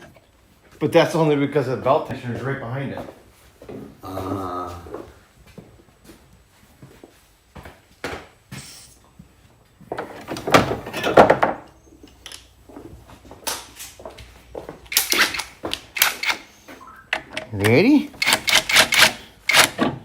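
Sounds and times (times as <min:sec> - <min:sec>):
hand tools clicking and knocking: 0:14.9 - 0:16.4, 0:17.1 - 0:20.0.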